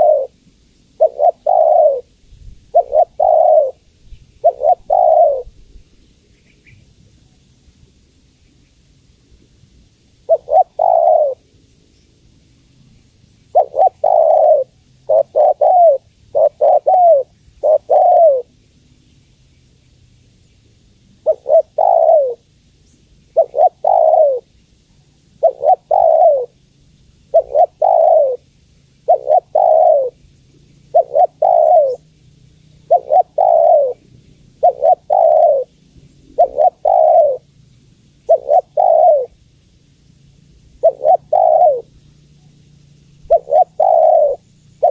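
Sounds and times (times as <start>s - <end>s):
dove cooing: 0.0s - 6.9s, 10.2s - 11.5s, 13.5s - 18.6s, 21.2s - 22.5s, 23.3s - 24.6s, 25.3s - 26.6s, 27.2s - 30.2s, 30.8s - 37.6s, 38.2s - 39.4s, 40.8s - 44.9s.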